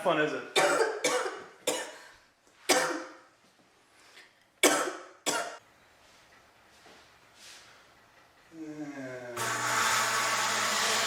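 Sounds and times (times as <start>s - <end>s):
woman coughing: 0.6s - 2.1s, 2.7s - 3.2s, 4.6s - 5.6s.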